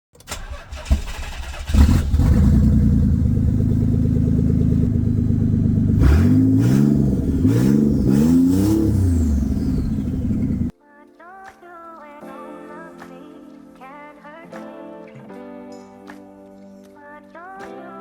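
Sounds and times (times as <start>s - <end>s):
car engine starting and idling: 0.2s - 10.7s
car engine revving: 0.3s - 10.7s.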